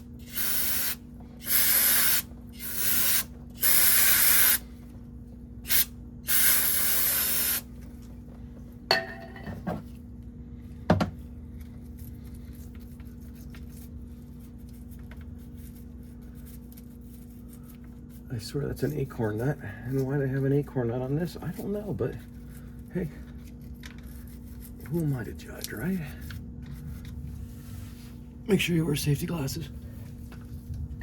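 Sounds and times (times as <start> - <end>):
aerosol spray hissing: 0.2 - 4.6, 5.7 - 7.6.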